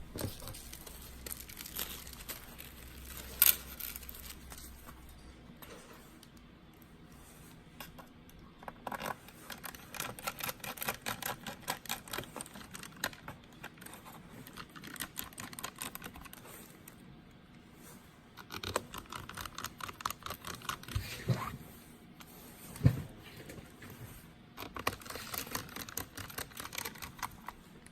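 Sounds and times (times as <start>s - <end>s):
laptop keyboard clicks: 24.6s - 27.6s.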